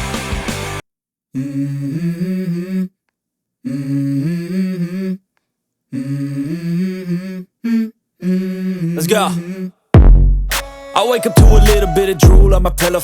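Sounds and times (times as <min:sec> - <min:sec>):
hummed vocal phrase: 0:05.9 - 0:09.8, 0:11.0 - 0:13.0.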